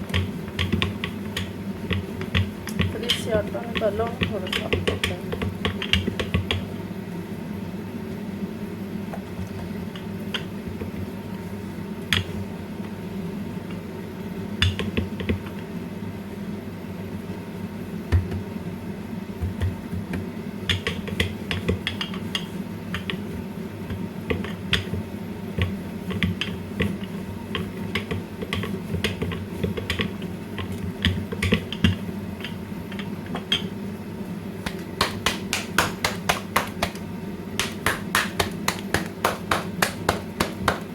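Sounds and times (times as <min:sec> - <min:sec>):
hands tapping dough: 0:00.0 - 0:06.7, 0:14.6 - 0:15.5, 0:19.4 - 0:23.2, 0:23.9 - 0:32.6, 0:34.6 - 0:40.9
steady low hum: 0:00.0 - 0:40.9
hands slapping dough: 0:19.4 - 0:23.2, 0:23.8 - 0:32.0, 0:34.6 - 0:40.9.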